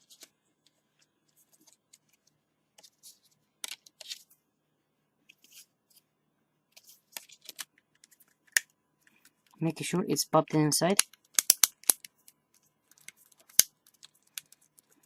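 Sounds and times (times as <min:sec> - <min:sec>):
plastic clicks and snaps: 0:11.0 - 0:12.1.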